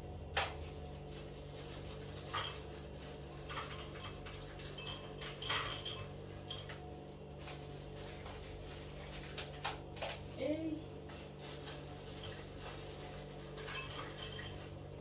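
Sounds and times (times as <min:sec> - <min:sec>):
utensils and dishes clinking: 0:01.8 - 0:06.9, 0:11.6 - 0:15.0.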